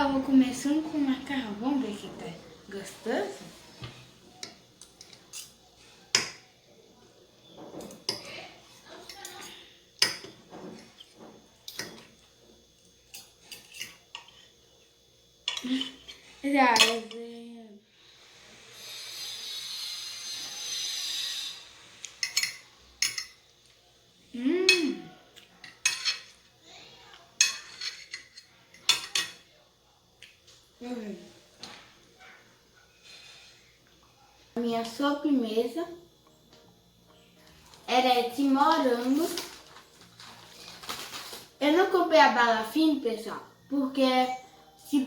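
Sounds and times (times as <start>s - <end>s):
cutlery clinking on a plate: 22.2s - 23.4s, 25.6s - 26.4s, 27.4s - 29.5s
person humming: 24.4s - 25.2s.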